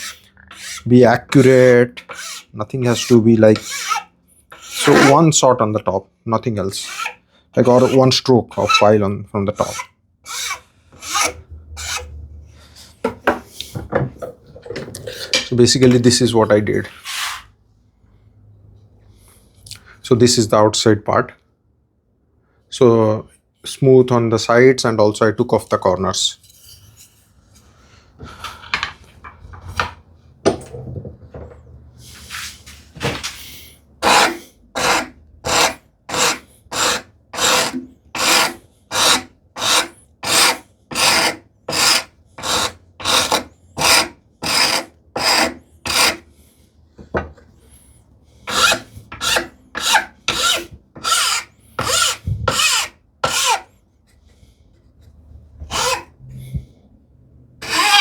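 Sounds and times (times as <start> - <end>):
hand file rasping on wood: 0.0 - 5.2, 6.8 - 8.9, 9.6 - 12.1, 34.0 - 46.3, 48.5 - 53.7, 55.7 - 56.1, 57.6 - 58.0.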